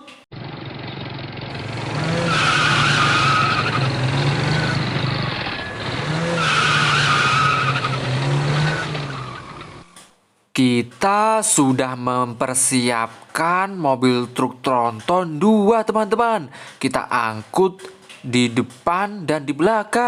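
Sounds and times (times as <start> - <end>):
car engine running: 0.3 - 10.0
tyre squeal: 1.6 - 10.0.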